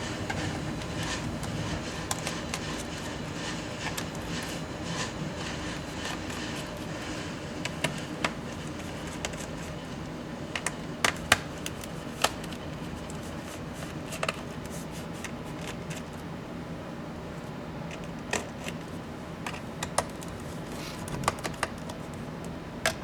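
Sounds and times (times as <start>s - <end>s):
steady low hum: 0.0s - 10.5s
clicks and taps of plastic and metal: 19.4s - 20.3s.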